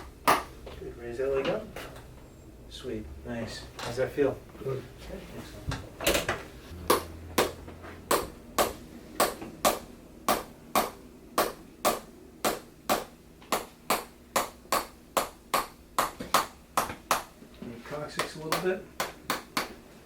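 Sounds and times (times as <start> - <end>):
sharp tapping on spine: 18.2 - 19.8.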